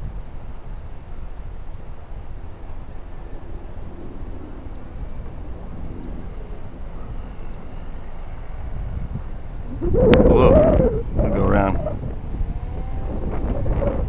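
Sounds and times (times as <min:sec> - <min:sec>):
gusty wind on microphone: 0:00.0 - 0:14.0
faint bird chirps: 0:05.9 - 0:08.6.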